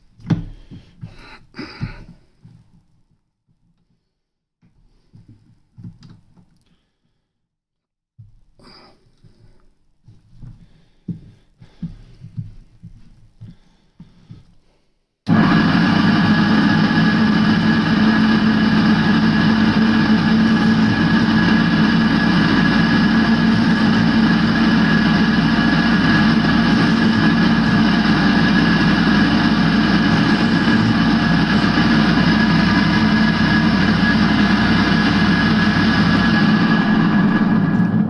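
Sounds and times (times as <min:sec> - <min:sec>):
valve grinding machine whine: 0:15.3 - 0:38.0.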